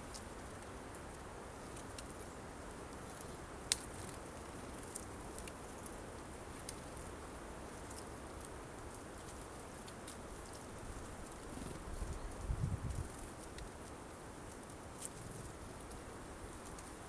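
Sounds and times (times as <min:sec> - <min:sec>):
birds pecking seeds: 0:00.0 - 0:17.0
faint outdoor hiss: 0:00.0 - 0:17.0.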